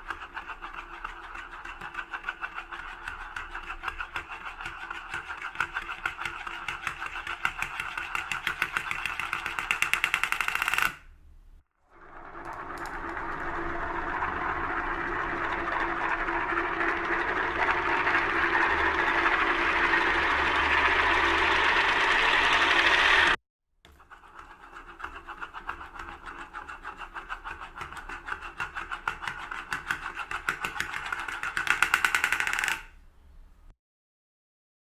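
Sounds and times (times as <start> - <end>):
spinning top whirring: 0.0 - 11.0, 11.9 - 23.4, 24.2 - 33.0
wobbling top rattle: 31.5 - 32.9.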